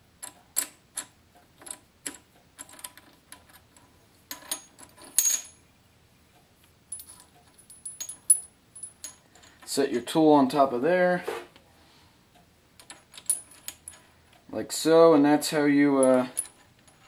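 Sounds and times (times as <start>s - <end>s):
metal parts clinking: 4.3s - 5.6s, 6.9s - 9.7s, 12.8s - 14.1s, 15.9s - 17.0s.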